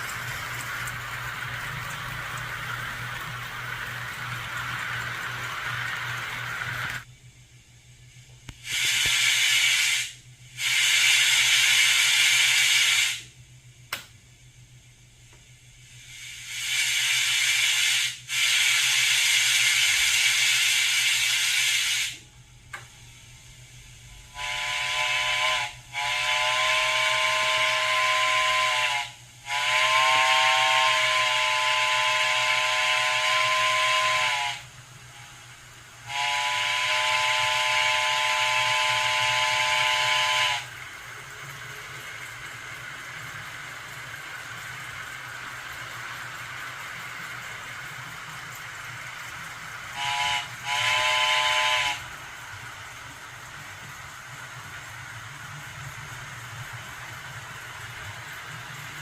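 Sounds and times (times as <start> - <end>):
synthesized steam hiss: 8.2 - 13.4, 15.7 - 26.0.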